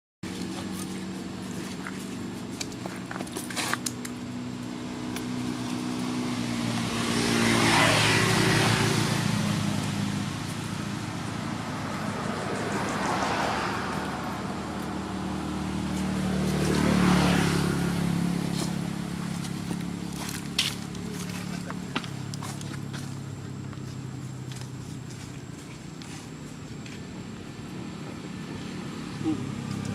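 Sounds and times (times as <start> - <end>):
vehicles driving past: 0.2 - 29.9.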